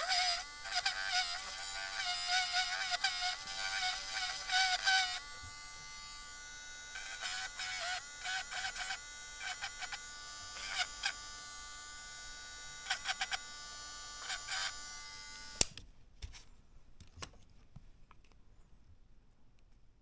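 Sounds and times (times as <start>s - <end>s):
rotary tool whining: 0.0s - 15.7s.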